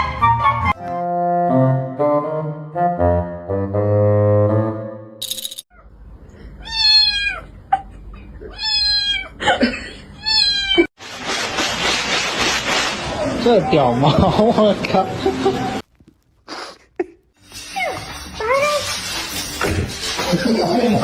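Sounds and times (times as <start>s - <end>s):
cat meowing: 6.6s - 7.5s, 8.4s - 9.4s, 10.2s - 10.9s.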